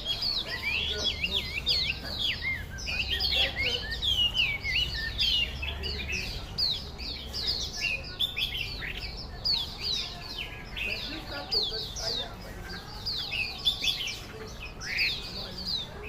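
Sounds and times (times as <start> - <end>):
bird singing whistled notes: 0.0 - 16.0.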